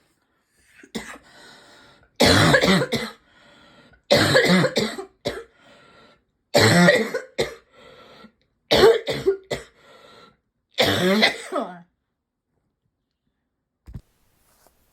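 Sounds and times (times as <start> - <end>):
person coughing deeply: 0.7 - 1.2, 2.2 - 3.2, 4.1 - 5.5, 6.6 - 7.6, 8.7 - 9.8, 10.8 - 11.8.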